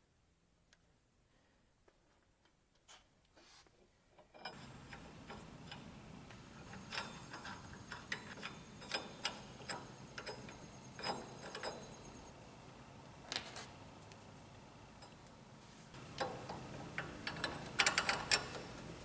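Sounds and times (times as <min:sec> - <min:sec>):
metallic clicks of hand tools: 0:04.5 - 0:12.3, 0:16.0 - 0:19.0
low steady hum: 0:04.6 - 0:19.0.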